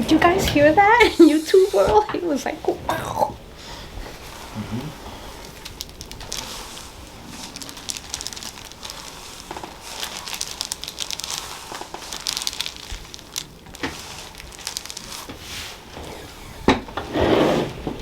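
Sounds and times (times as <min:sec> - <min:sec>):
crinkly rustling: 0:00.0 - 0:18.0.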